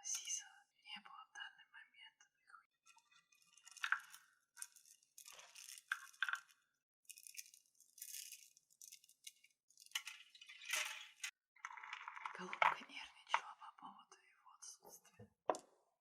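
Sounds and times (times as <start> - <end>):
crystals rattling and clinking: 3.4 - 13.0.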